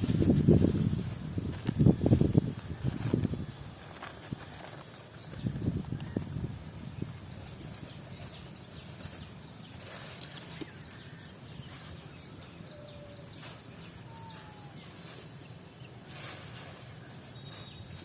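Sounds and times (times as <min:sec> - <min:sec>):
faint bird calls: 0:07.7 - 0:18.0.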